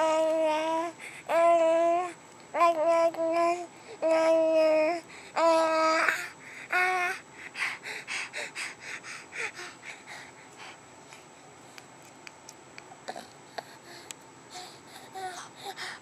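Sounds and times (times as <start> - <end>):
baby breathy huffs: 6.0 - 11.3, 13.1 - 16.0.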